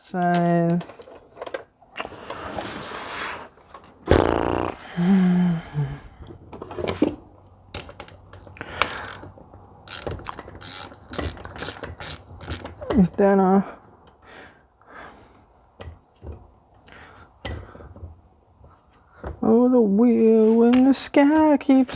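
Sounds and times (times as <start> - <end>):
hand tools rattling: 7.7 - 13.4
ratchet wrench clicking: 8.8 - 12.9.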